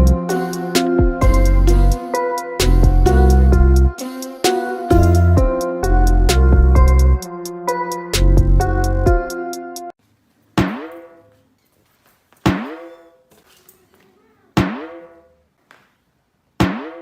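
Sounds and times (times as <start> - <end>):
music: 0.0 - 10.0, 16.6 - 17.0.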